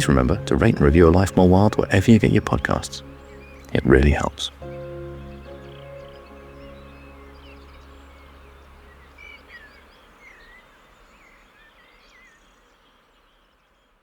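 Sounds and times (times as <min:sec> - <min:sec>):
low music drone: 0:00.0 - 0:10.6
small birds chirping: 0:00.0 - 0:14.0
soft outdoor hiss: 0:00.0 - 0:14.0.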